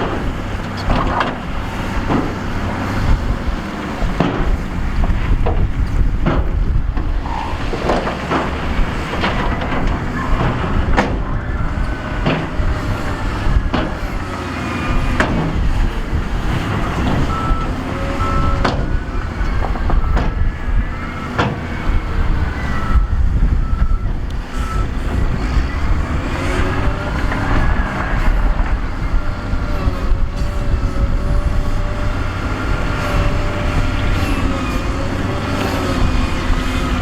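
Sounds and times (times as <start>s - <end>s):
diesel engine rumble: 0.0s - 37.0s
reversing alarm beeping: 17.2s - 26.6s.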